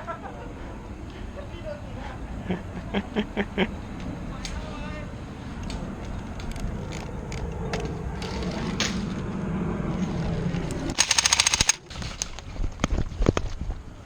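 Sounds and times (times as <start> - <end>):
steady low rumble: 0.0 - 14.0
airsoft gun shots: 11.0 - 11.8.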